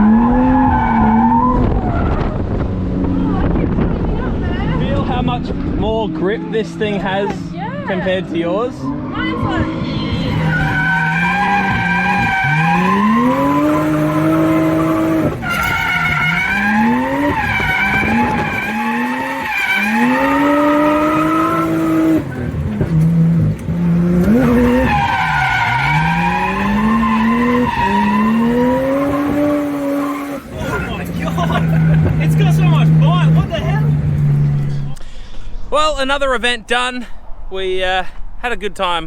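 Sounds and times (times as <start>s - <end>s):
car engine revving hard: 0.0s - 7.2s, 8.8s - 34.9s
tyre noise: 8.8s - 35.0s.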